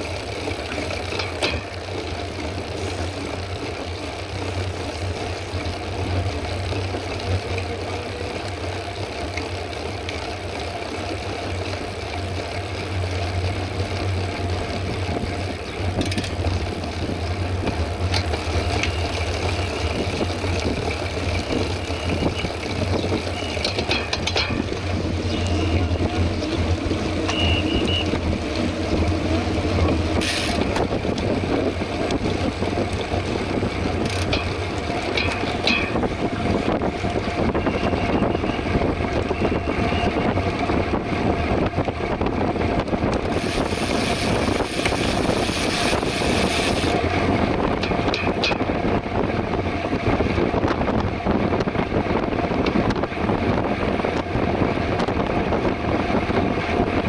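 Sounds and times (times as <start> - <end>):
wind rush: 14.5 - 57.0
short high-pitched tones: 27.3 - 28.2.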